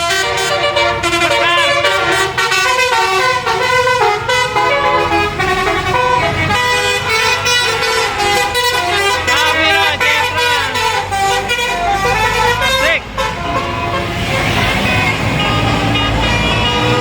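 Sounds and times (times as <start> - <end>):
musical bus horn tune: 0.0 - 17.0.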